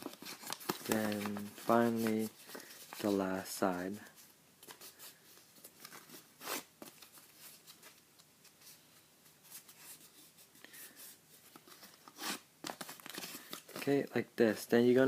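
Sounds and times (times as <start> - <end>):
paper being folded: 0.0 - 3.5
paper crinkle: 0.0 - 3.5, 9.5 - 14.0.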